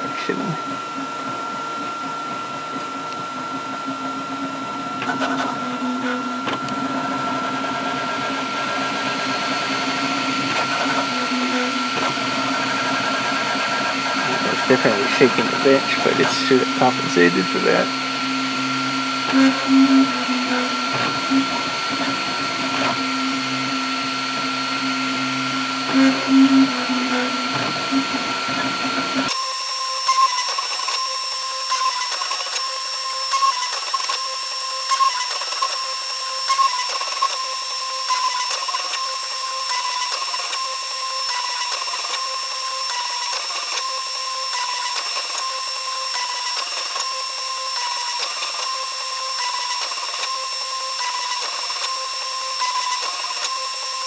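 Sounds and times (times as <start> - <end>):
stepper motors whining: 13.8 - 28.1.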